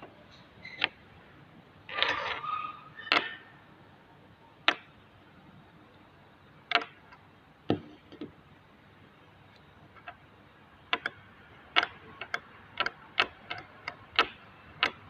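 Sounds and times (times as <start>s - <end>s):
tools clicking and knocking: 10.9s - 15.0s.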